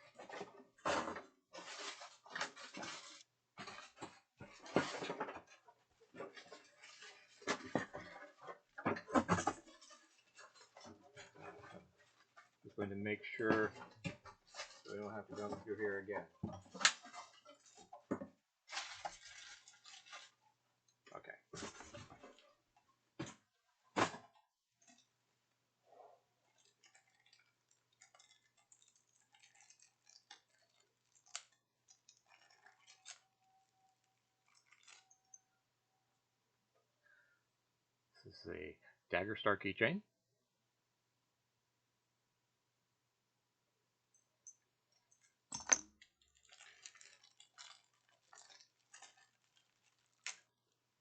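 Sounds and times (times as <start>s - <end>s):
packaging rustling and clicking: 1.6s - 12.6s, 18.7s - 20.4s, 26.6s - 35.4s, 45.2s - 50.6s.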